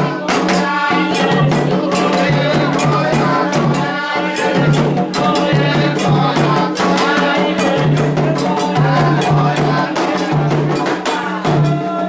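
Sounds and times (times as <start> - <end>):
shakers and drums: 0.0 - 12.0
singing: 0.0 - 12.0.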